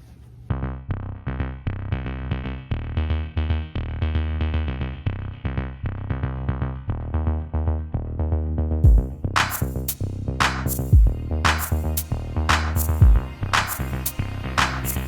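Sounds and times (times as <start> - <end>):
drum-machine beat: 8.8 - 15.0.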